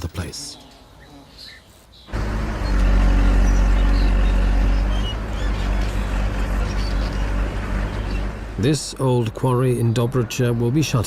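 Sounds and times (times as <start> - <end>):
heavy machinery engine humming: 2.1 - 11.0.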